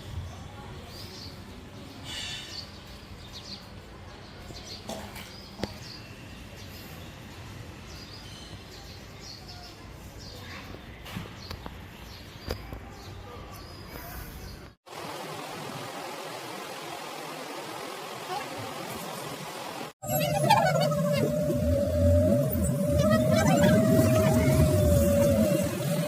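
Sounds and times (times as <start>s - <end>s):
outdoor background noise: 0.0s - 26.0s.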